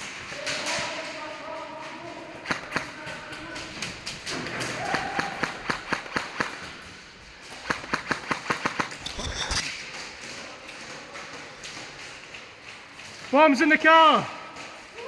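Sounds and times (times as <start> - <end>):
airsoft rifle shots: 2.4 - 3.0, 4.4 - 6.8, 7.5 - 9.0.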